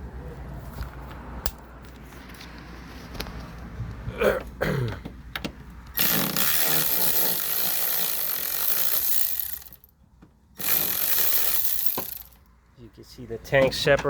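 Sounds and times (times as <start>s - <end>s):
electric ratchet motor whir: 6.0s - 9.9s, 10.6s - 12.4s.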